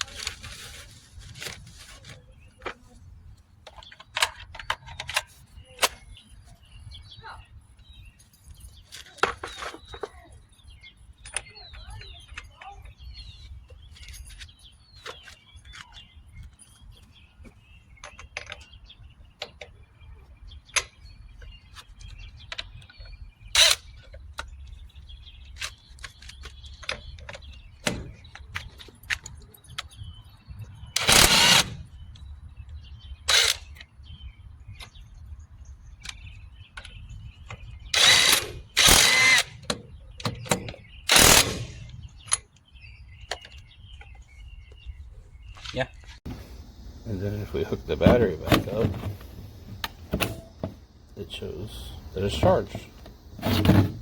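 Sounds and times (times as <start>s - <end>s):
impact wrench bursts: 31.0s - 31.8s, 37.9s - 39.7s, 41.1s - 41.9s.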